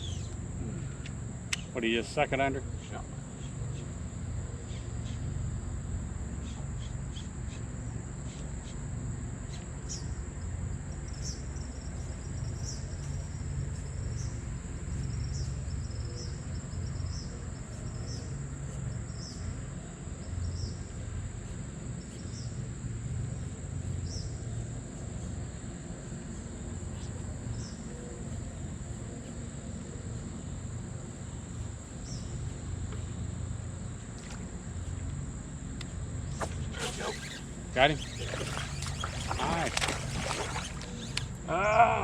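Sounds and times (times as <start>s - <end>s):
insects droning: 0.0s - 42.0s
short insect chirps: 35.8s - 41.6s.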